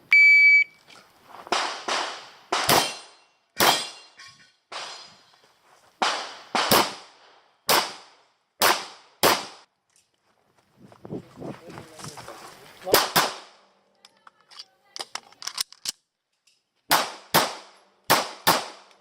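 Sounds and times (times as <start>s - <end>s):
pistol shots echoing: 1.5s - 4.0s, 6.0s - 9.6s, 16.9s - 18.9s.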